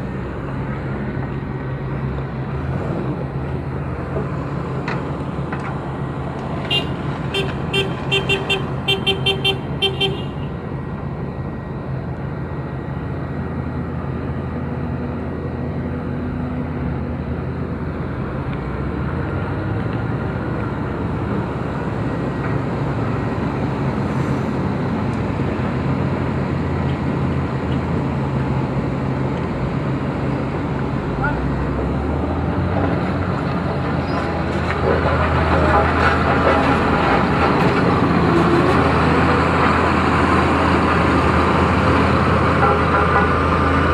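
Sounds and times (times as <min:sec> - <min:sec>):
diesel engine running: 0:00.0 - 0:43.9
vehicle horn short beeps: 0:06.7 - 0:10.5.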